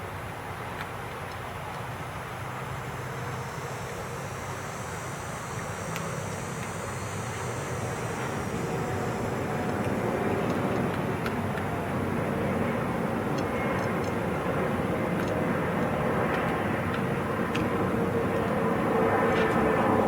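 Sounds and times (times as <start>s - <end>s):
faint steady hum: 0.0s - 20.0s
outdoor background rumble: 0.0s - 20.0s
faint clicks: 13.3s - 14.2s, 15.1s - 18.6s.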